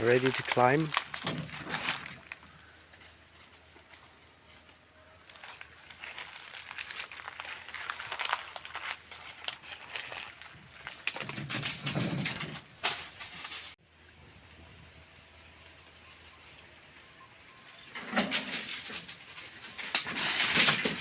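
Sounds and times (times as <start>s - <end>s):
rustling and crackling: 0.0s - 13.8s, 17.7s - 21.0s.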